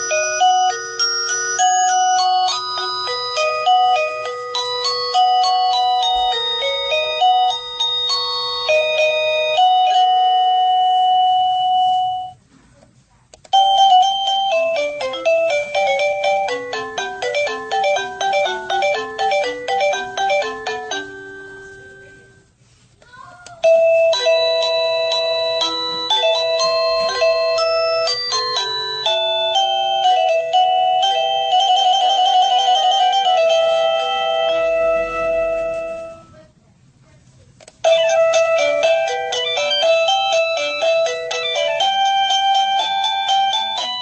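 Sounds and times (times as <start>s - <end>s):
doorbell chime electronic melody: 0.0s - 12.4s, 13.5s - 22.4s, 23.6s - 36.3s, 37.8s - 44.0s.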